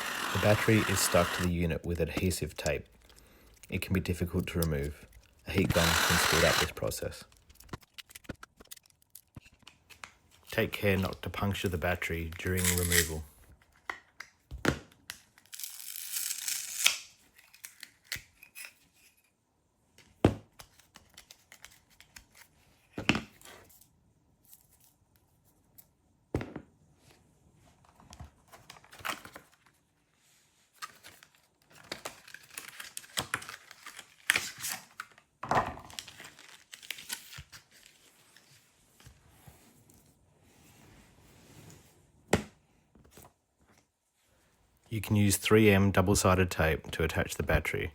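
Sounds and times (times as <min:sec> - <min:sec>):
adhesive tape tearing: 0:00.0 - 0:01.5, 0:05.5 - 0:06.8, 0:12.6 - 0:13.2, 0:15.5 - 0:17.0.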